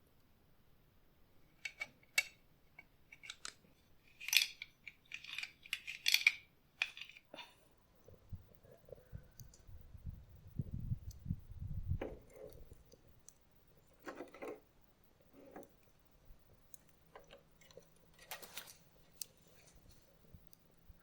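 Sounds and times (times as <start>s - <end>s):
wire cutters clicking and scraping: 1.6s - 7.3s.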